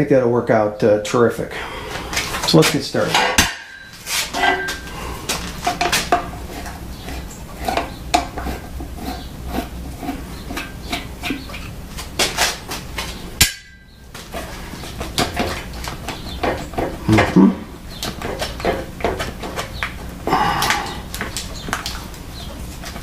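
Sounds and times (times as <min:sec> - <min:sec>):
metal tools clinking and knocking: 0:03.1 - 0:04.9.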